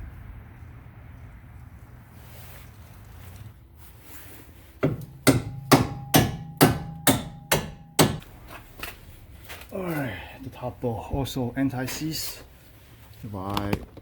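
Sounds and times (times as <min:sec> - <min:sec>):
hammer striking metal bolt: 0:04.8 - 0:08.3.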